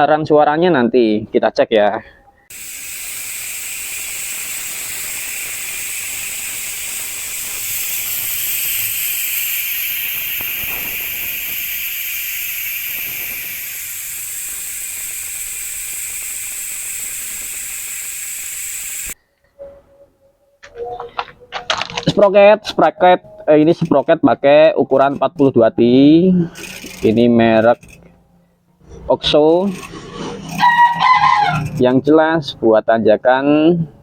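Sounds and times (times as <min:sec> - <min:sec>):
bicycle freewheel ratchet buzzing: 0:02.5 - 0:19.2, 0:26.4 - 0:28.2, 0:29.4 - 0:31.8.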